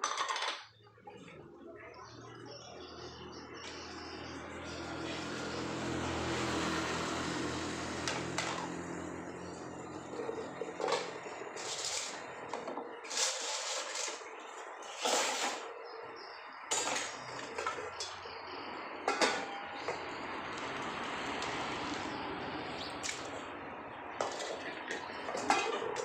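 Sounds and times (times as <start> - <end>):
dishware clattering: 0.0 - 0.7, 16.7 - 18.2, 19.1 - 19.7, 24.2 - 26.0.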